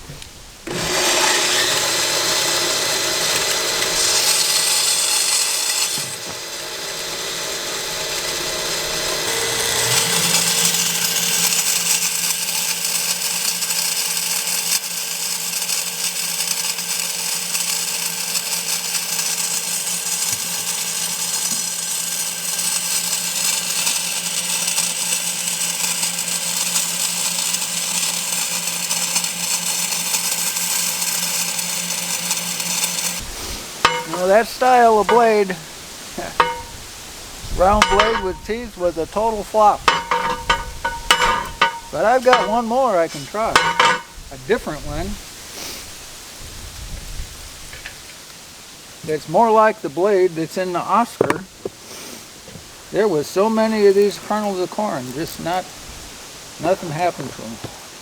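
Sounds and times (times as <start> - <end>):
grinder motor whirring: 0.0 - 45.3.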